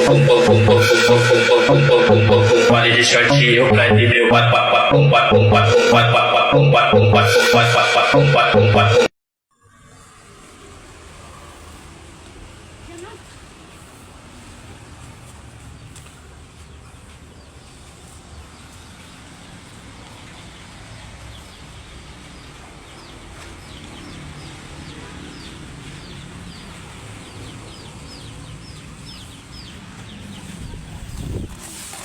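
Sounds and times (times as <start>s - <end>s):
bird chirping: 21.3s - 31.5s.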